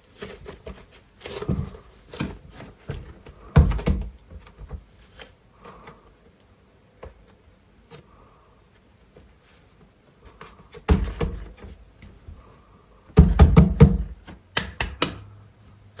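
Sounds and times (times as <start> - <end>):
hands tapping clay and packaging: 13.2 - 15.4.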